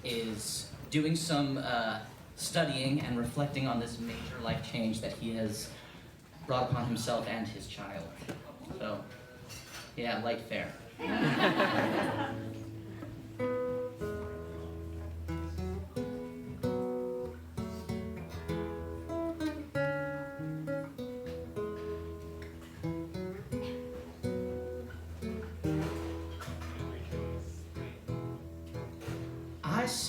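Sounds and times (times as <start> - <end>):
picked instrumental notes: 11.9 - 29.7.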